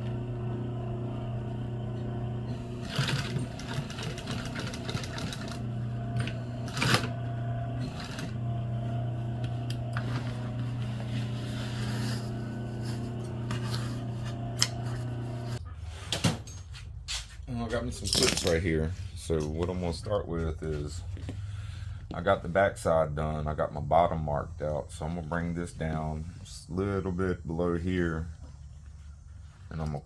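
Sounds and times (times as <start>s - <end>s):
sewing machine running: 0.0s - 15.6s.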